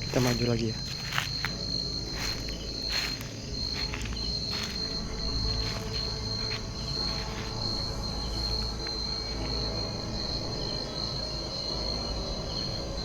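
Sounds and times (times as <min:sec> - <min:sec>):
crickets trilling: 0:00.0 - 0:13.0.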